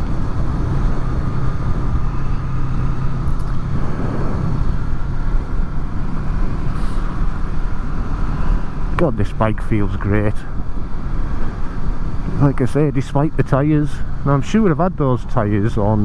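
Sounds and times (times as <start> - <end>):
wind noise: 0.0 - 9.1
motorcycle engine cruising: 0.0 - 16.0.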